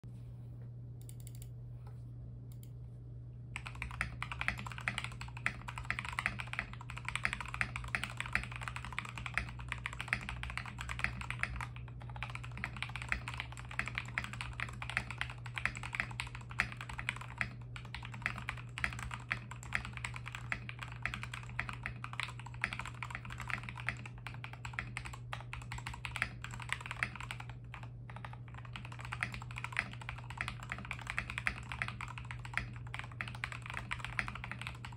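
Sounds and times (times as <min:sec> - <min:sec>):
steady low hum: 0:00.0 - 0:34.9
typing on mechanical keyboard: 0:03.6 - 0:34.9.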